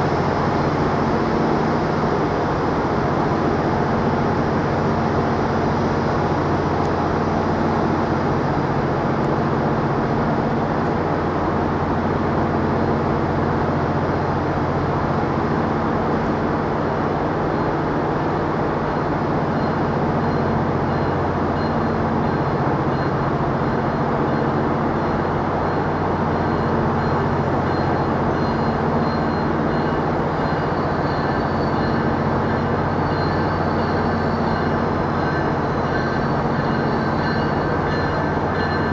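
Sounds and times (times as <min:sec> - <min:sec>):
locomotive deep hum: 0:00.0 - 0:38.9.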